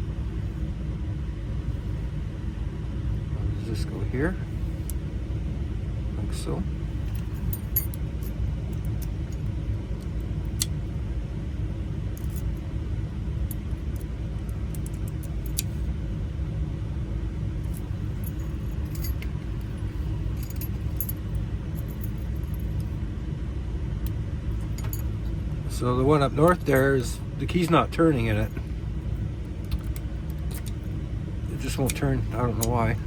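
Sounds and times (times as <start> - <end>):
metal lock parts clicking: 7.0 - 10.8, 12.2 - 12.6, 13.5 - 15.9, 17.6 - 22.9, 24.6 - 25.3, 26.4 - 28.6, 29.6 - 30.9, 31.6 - 33.0.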